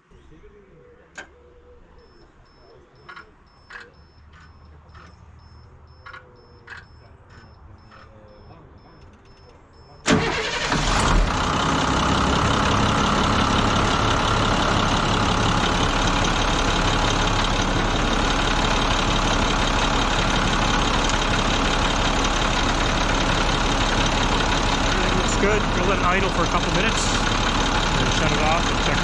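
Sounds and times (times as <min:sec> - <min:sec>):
bus engine idling: 0:10.0 - 0:29.0.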